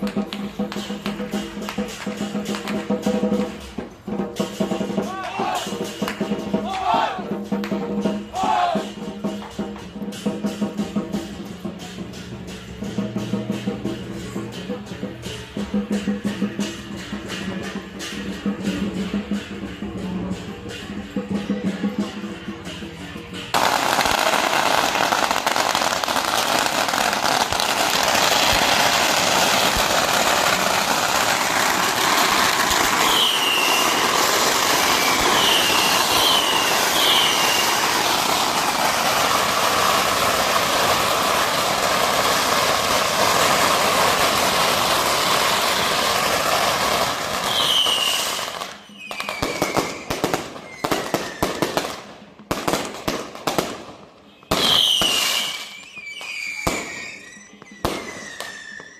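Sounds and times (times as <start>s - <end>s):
firecrackers crackling and banging: 0.0s - 58.9s
short falling whistles: 33.1s - 34.0s, 47.5s - 51.6s, 54.6s - 58.9s.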